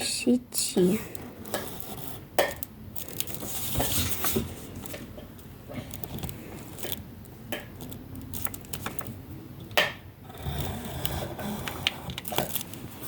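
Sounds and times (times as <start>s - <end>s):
pencil tapping and scratching on paper: 1.1s - 2.7s, 9.8s - 12.6s.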